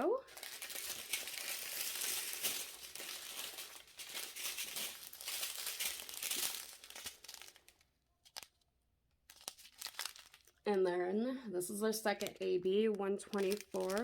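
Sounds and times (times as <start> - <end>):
plastic bags crinkling: 0.0 - 8.6, 9.2 - 10.7, 12.0 - 14.0.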